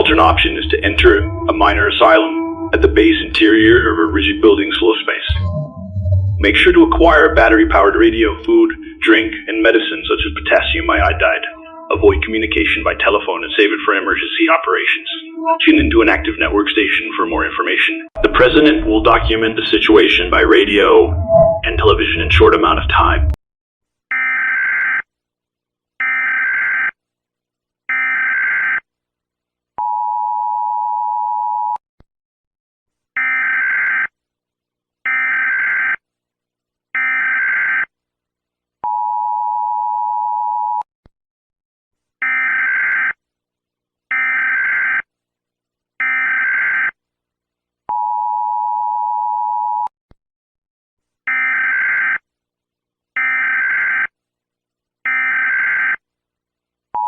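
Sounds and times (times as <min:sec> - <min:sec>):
two-note attention signal: 0:00.0 - 0:03.9.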